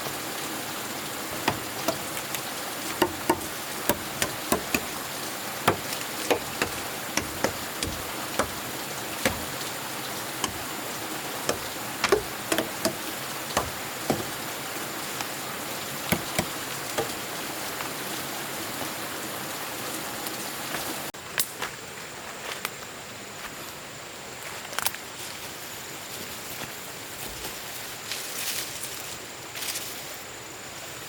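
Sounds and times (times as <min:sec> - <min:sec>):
steady hiss: 0:00.0 - 0:21.0
sharp clicks and knocks: 0:01.3 - 0:05.0, 0:05.6 - 0:09.8, 0:10.4 - 0:14.6, 0:16.1 - 0:17.3.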